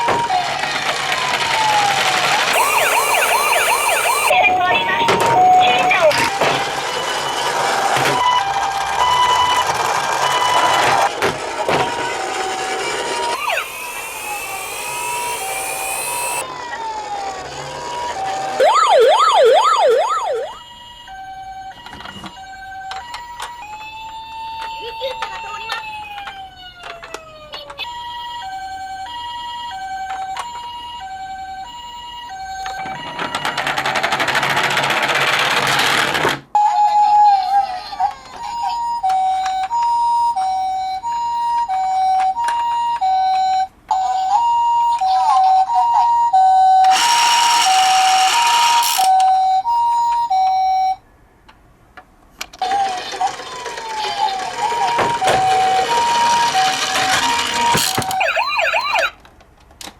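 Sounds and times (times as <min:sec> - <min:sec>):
toy ambulance siren: 0:00.0 - 0:34.3, 0:36.6 - 0:51.0, 0:52.6 - 0:59.2
mechanical clicking whir: 0:02.5 - 0:04.3, 0:12.3 - 0:18.7, 0:46.8 - 0:49.1
toy clicks: 0:46.8 - 0:49.2, 0:55.6 - 0:59.1.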